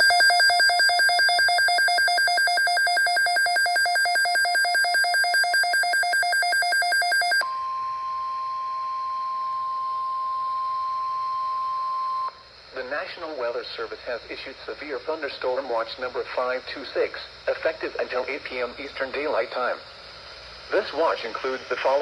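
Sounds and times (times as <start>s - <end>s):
steady single-pitch alarm tone: 0.0s - 12.5s.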